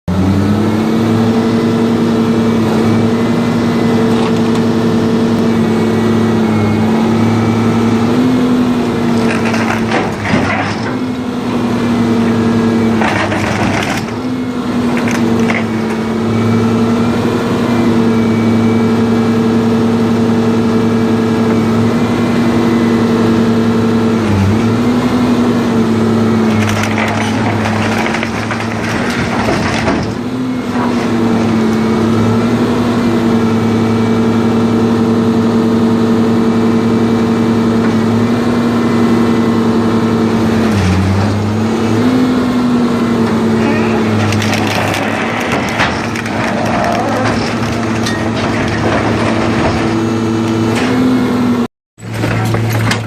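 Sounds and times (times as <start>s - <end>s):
scrap metal crunching: 3.8s - 17.3s, 26.1s - 32.6s, 40.3s - 53.0s
machine drone: 43.2s - 51.0s.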